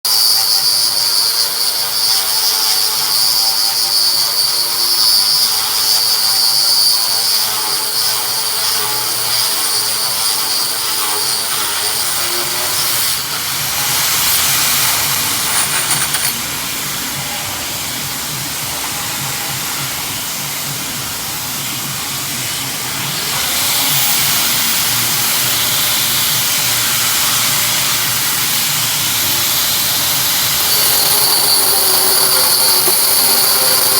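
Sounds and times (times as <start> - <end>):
power tool whining: 0.1 - 21.9, 22.9 - 33.9
broad hissing noise: 13.2 - 33.9.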